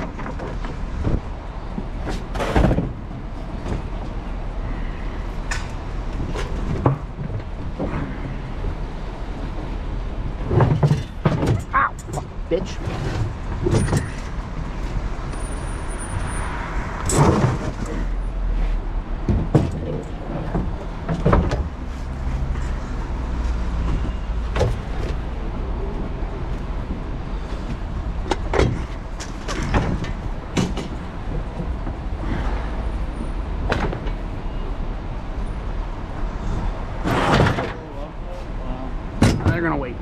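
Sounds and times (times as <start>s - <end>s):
sharp knocks and clunks: 10.4s - 14.5s, 19.2s - 22.2s, 27.7s - 32.0s, 39.2s - 39.8s.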